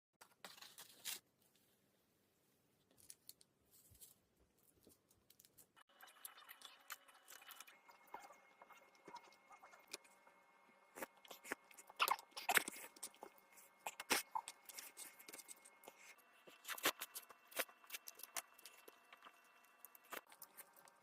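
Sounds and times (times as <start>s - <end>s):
packaging crinkling and tearing: 11.0s - 21.0s.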